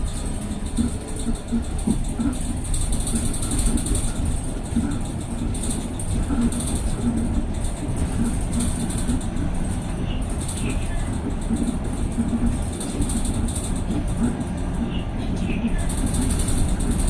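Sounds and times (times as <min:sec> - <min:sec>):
bus running gear rumble: 0:00.0 - 0:17.0.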